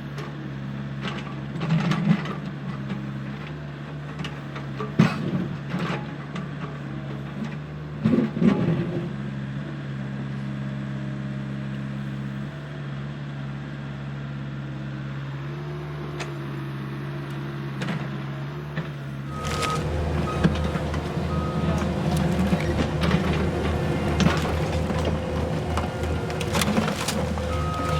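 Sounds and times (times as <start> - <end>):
excavator diesel engine running: 13.5 - 27.9.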